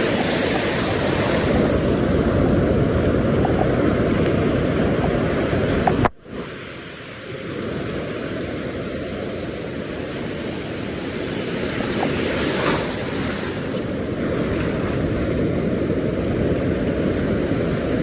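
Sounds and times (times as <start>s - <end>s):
wind buffeting microphone: 0.0s - 6.5s
surf on a beach: 0.0s - 18.0s.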